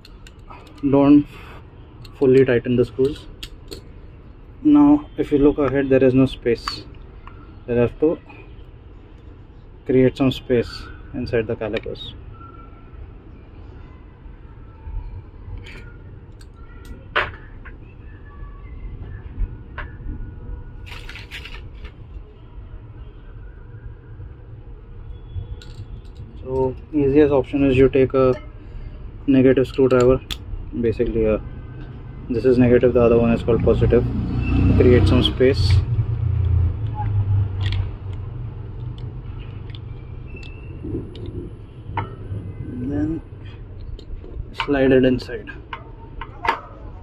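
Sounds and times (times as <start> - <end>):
light clicks handling brake parts: 29.6 - 31.2.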